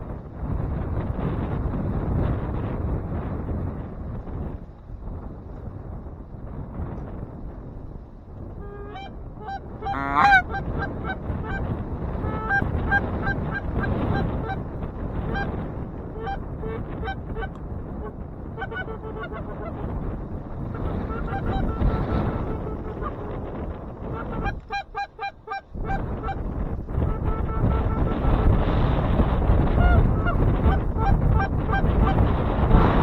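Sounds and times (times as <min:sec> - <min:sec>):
wind buffeting microphone: 0:00.0 - 0:33.0
geese honking: 0:08.6 - 0:14.6, 0:15.2 - 0:15.5, 0:16.2 - 0:19.9, 0:20.8 - 0:23.4, 0:24.1 - 0:26.4, 0:27.0 - 0:28.6, 0:29.7 - 0:32.2.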